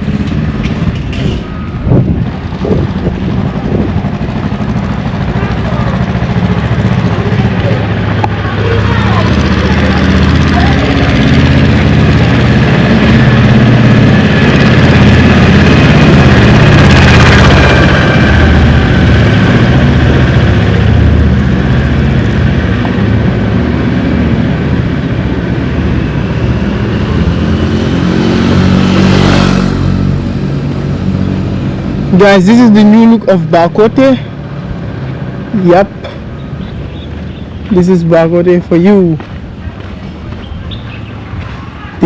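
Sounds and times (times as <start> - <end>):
vehicle passing close by: 0.0 - 33.1
vehicle engines running: 0.0 - 42.0.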